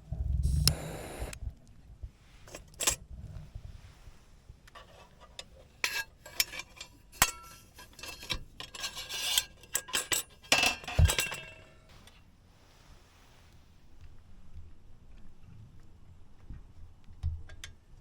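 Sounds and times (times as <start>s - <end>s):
metal scrape: 2.4s - 13.5s
metal cookware clinking: 5.4s - 11.9s.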